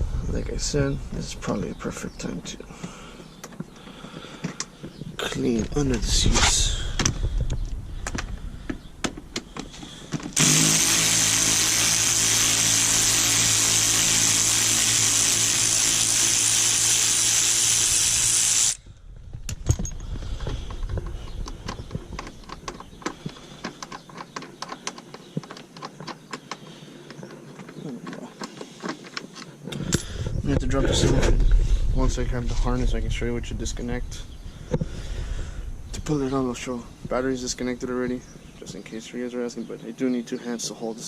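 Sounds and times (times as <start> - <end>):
vacuum cleaner running: 10.4 - 18.8.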